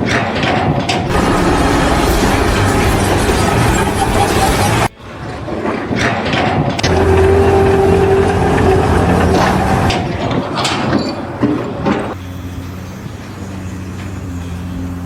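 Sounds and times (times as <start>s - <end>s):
engine running steadily: 1.1s - 4.9s.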